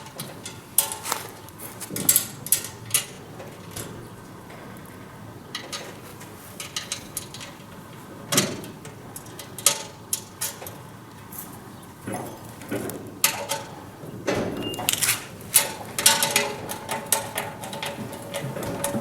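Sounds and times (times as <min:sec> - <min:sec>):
metal parts and tools knocking: 0:12.8 - 0:19.0.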